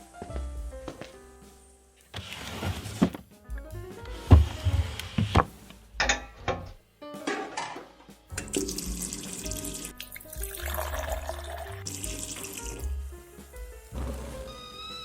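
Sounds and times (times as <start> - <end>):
background music: 0.0 - 15.0
water running from a tap: 8.4 - 12.9.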